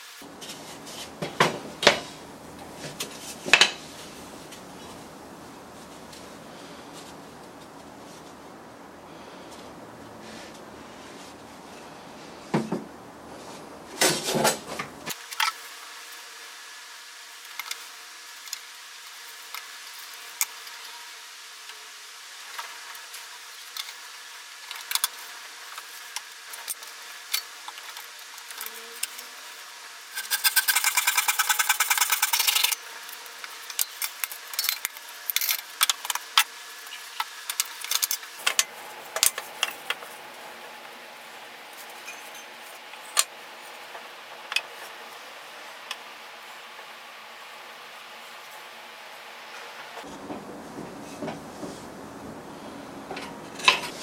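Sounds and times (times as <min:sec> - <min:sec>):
wood pieces and tools clicking: 0:30.2 - 0:32.8, 0:33.4 - 0:40.1.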